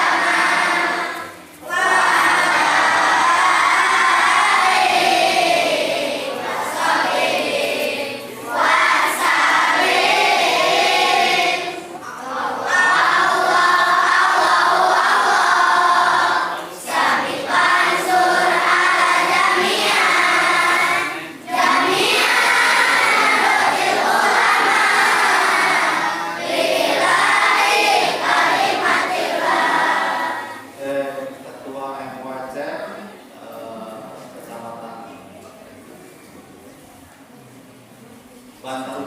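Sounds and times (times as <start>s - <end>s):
choir singing: 0.0s - 30.8s.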